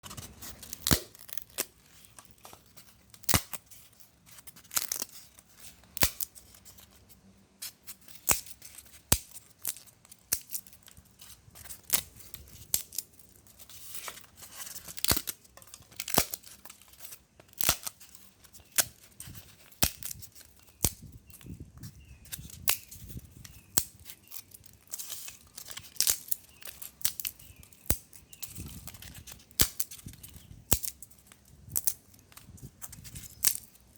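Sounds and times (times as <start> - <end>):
foam board snapping and cracking: 0.0 - 6.9, 7.6 - 21.6, 22.2 - 33.8
crumbling crackle: 0.0 - 7.1.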